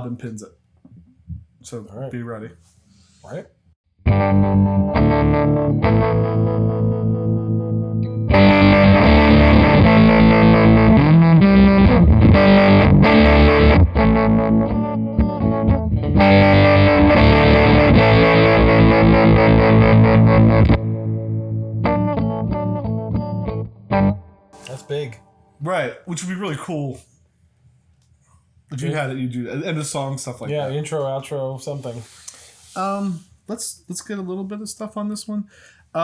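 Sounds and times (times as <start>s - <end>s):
heavily distorted electric guitar: 4.1s - 25.2s
electric guitar clean tone: 4.1s - 25.6s.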